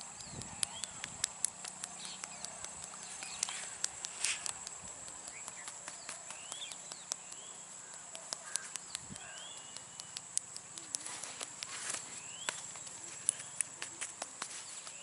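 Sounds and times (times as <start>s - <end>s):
bird chirps: 0.0s - 15.0s
hands slapping skin: 0.2s - 15.0s.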